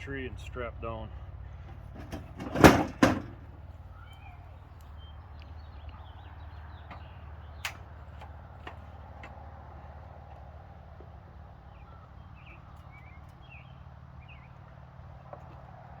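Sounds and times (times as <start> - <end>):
loud knocks on a box: 2.1 - 3.4.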